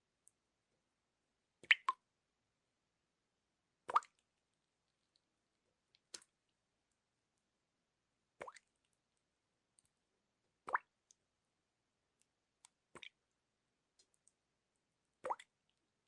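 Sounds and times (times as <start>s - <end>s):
water drops plopping: 1.6s - 2.0s, 15.2s - 15.5s
tiny faint ticks: 12.2s - 14.4s.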